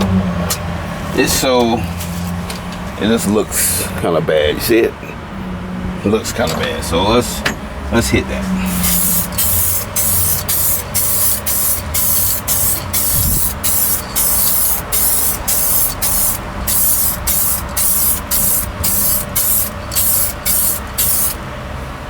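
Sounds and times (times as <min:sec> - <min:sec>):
spray paint hissing in bursts: 0:08.7 - 0:21.4.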